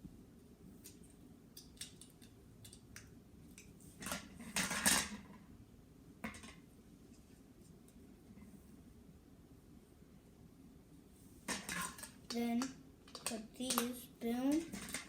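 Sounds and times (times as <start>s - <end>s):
plastic bricks clicking: 11.8s - 15.0s.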